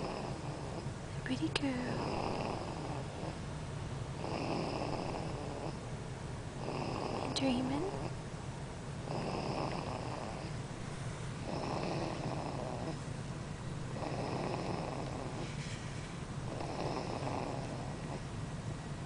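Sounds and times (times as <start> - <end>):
baby snoring: 0.0 - 0.9, 1.6 - 3.4, 4.2 - 5.8, 6.6 - 8.1, 9.0 - 10.6, 11.4 - 13.1, 13.9 - 15.8, 16.4 - 18.3.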